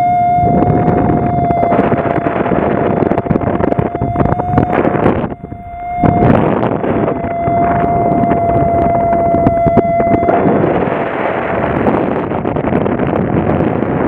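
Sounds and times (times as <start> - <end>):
high-pitched whine: 0.0 - 13.9
wind rush on microphone: 0.0 - 14.0.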